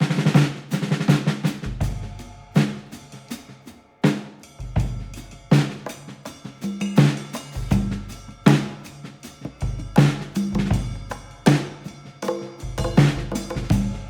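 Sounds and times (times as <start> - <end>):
drum-kit beat: 0.0 - 14.0.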